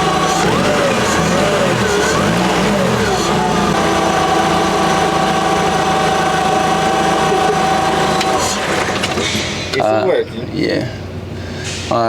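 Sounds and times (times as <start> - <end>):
forklift engine idling: 0.0 - 12.0.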